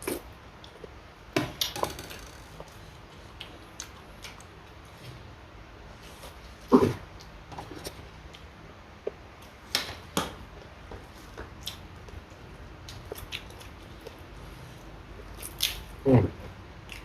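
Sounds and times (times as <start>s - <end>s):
person chewing: 11.0s - 12.2s, 12.8s - 17.0s.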